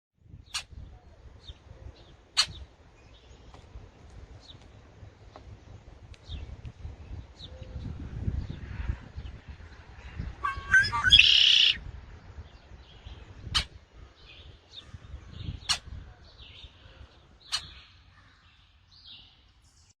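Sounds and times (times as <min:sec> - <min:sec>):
birds chirping and calling: 0:00.3 - 0:11.8, 0:12.4 - 0:19.9
sharp bird chips: 0:02.3 - 0:02.6, 0:17.5 - 0:17.9
loud harsh bird call: 0:10.4 - 0:11.8, 0:17.5 - 0:18.2.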